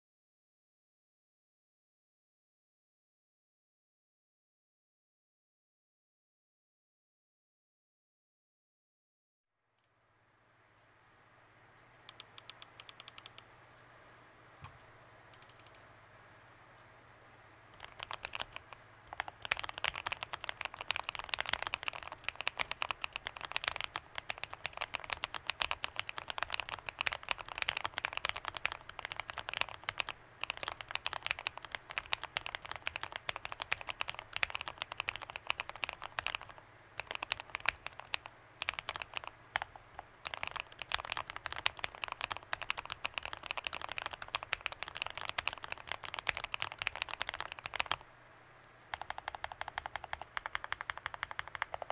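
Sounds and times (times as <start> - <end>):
mechanical keyboard typing: 12.1 - 13.5, 15.4 - 15.8, 17.8 - 48.0, 48.9 - 51.9.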